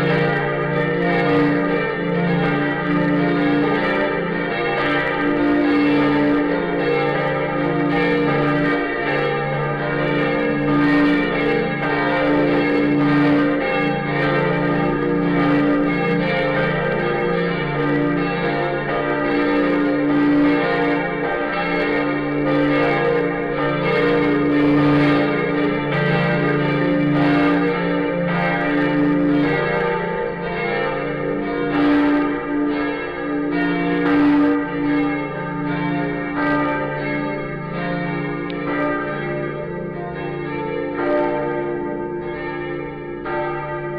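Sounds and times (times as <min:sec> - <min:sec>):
church bells pealing: 0:00.0 - 0:43.9.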